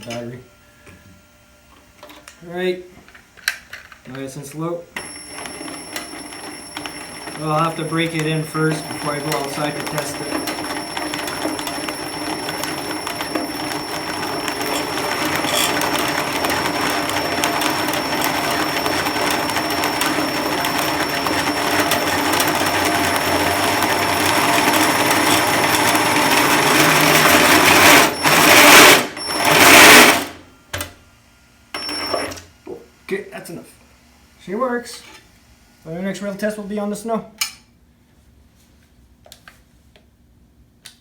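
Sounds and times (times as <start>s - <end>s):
toy motor whirring: 13.8s - 15.9s.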